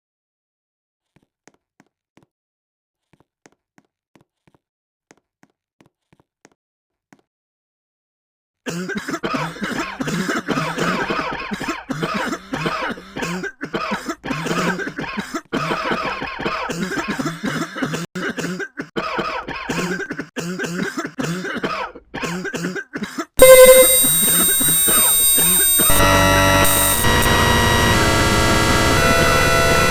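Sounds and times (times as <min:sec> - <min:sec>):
person coughing: 0:08.7 - 0:23.4
harsh electronic noise: 0:23.4 - 0:29.9.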